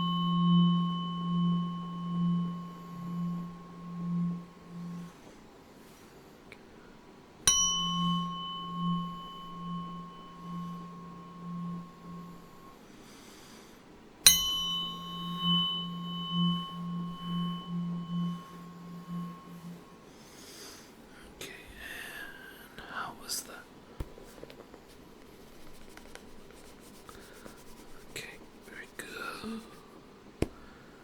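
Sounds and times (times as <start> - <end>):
tuning fork ringing: 0.0 - 5.5, 7.4 - 20.8.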